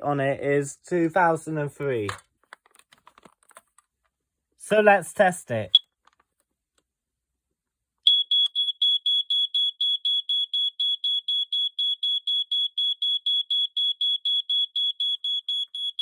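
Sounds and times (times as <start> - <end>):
smoke alarm beeping rapidly: 8.1 - 16.0.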